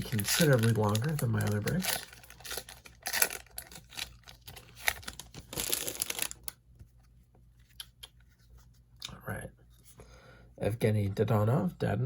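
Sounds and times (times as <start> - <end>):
foil wrapper crinkling and tearing: 0.0 - 6.6.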